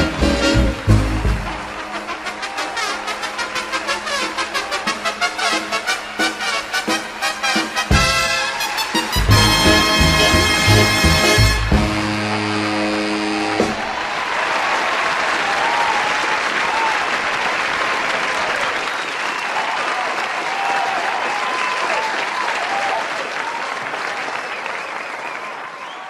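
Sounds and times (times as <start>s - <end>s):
big band swing chord: 0.0s - 2.5s, 3.2s - 14.0s
audience applauding and cheering: 0.0s - 26.0s.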